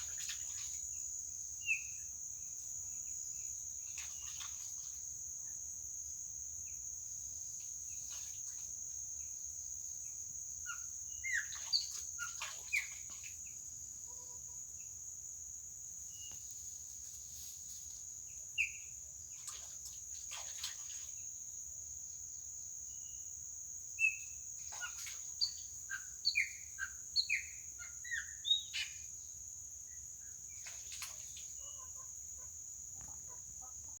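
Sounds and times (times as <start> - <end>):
songbird whistling and chirping: 24.0 - 29.0.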